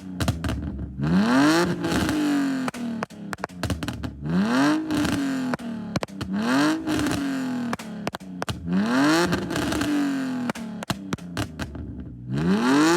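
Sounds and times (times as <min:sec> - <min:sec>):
car engine revving: 0:00.0 - 0:12.9
exhaust pops and crackles: 0:00.0 - 0:12.9.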